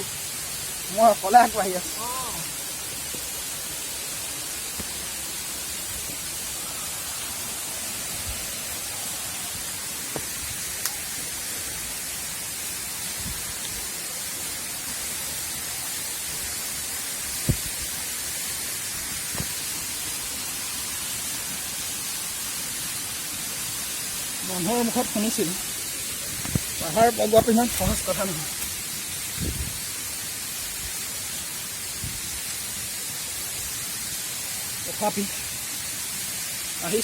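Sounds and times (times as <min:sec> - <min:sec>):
waterfall rushing hiss: 0:00.0 - 0:37.0.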